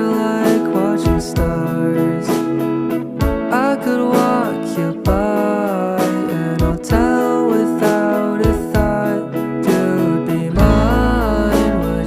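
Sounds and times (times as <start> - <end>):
song with acoustic guitar: 0.0 - 12.0
deep bass: 10.5 - 12.0.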